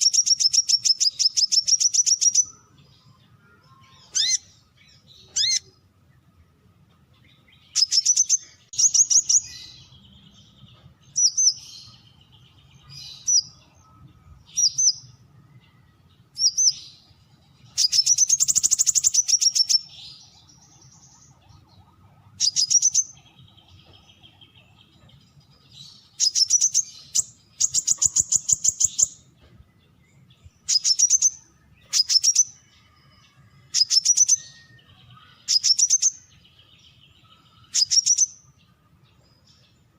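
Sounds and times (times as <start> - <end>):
bird calling with sharp notes: 3.6 - 5.8, 12.8 - 25.0, 25.8 - 29.3, 30.6 - 36.3, 37.2 - 38.5.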